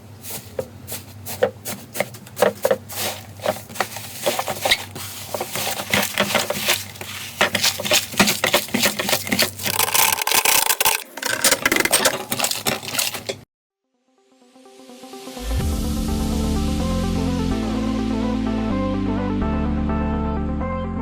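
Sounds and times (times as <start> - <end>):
wet rubbing of slime: 0.2 - 9.8.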